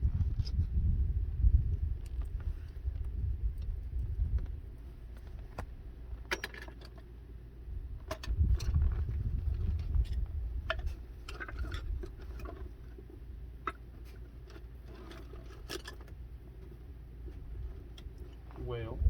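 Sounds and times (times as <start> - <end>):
steady low rumble: 0.0 - 6.3, 7.2 - 13.5, 17.2 - 19.0.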